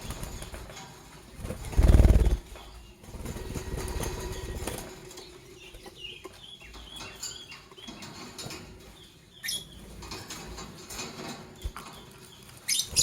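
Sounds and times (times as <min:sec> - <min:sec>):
lovebirds chirping: 0:04.2 - 0:08.2, 0:11.6 - 0:13.0.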